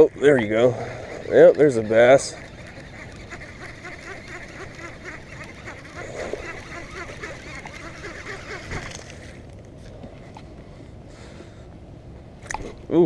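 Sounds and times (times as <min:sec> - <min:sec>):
fishing reel ticking whir: 0:00.0 - 0:09.5.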